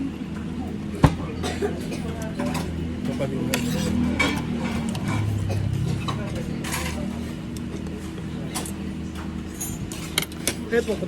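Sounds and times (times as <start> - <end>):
steady low hum: 0.0 - 6.1.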